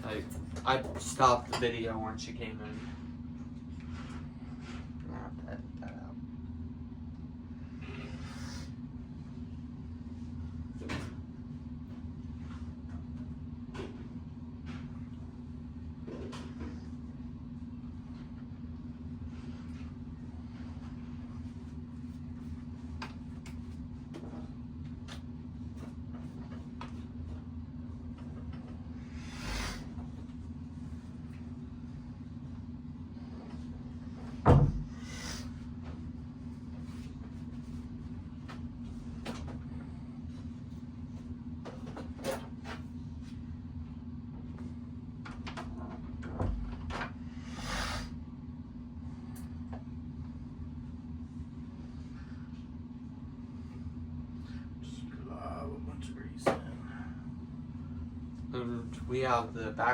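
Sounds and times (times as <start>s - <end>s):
steady low hum: 0.0s - 59.9s
short hisses: 29.1s - 29.9s, 47.4s - 48.2s.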